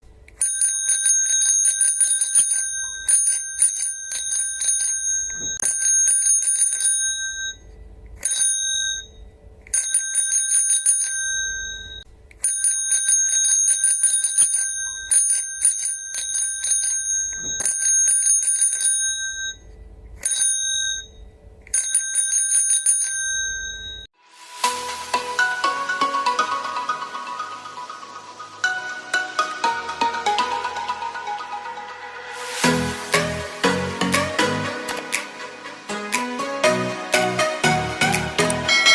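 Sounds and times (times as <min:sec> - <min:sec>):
bicycle bell ringing rapidly: 0:00.4 - 0:09.2, 0:09.8 - 0:21.2, 0:21.8 - 0:24.1.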